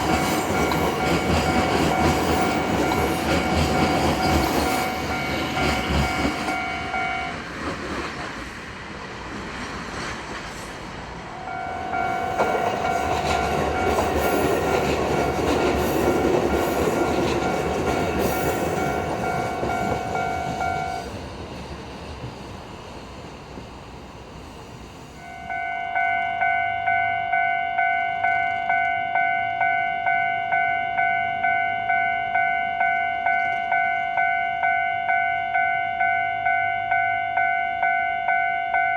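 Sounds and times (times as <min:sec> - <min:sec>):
level crossing warning bell: 0:00.0 - 0:07.5, 0:11.3 - 0:21.1, 0:25.2 - 0:38.9
train rumbling over rails: 0:00.0 - 0:38.9.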